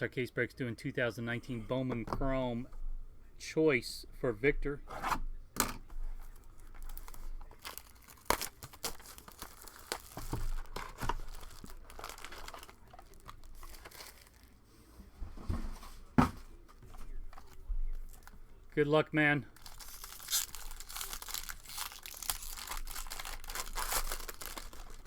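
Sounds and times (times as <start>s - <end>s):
packaging being torn open: 6.6s - 14.5s, 19.6s - 25.0s.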